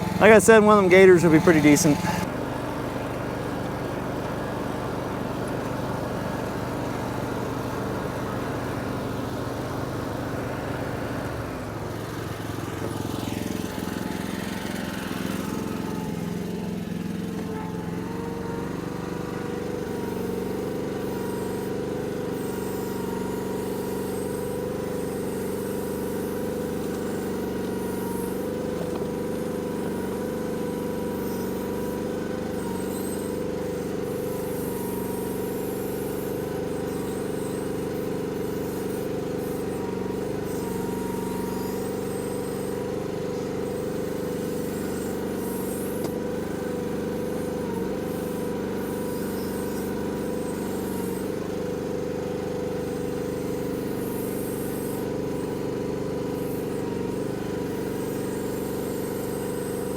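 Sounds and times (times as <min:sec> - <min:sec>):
excavator engine running: 0:00.0 - 0:02.2.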